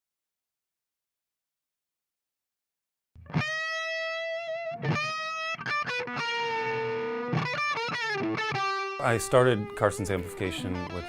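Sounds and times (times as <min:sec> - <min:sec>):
electric guitar lead: 0:03.2 - 0:11.0.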